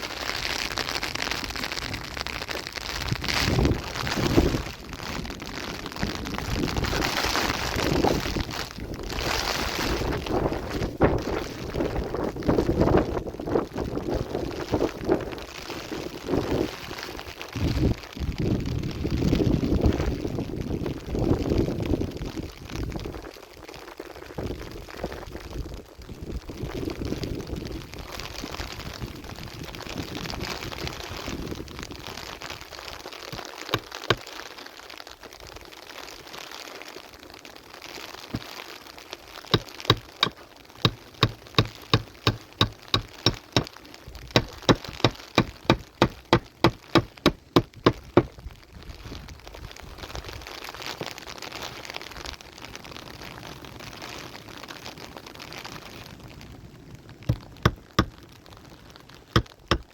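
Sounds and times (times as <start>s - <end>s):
sharp regular crunches: 39.4s - 48.4s.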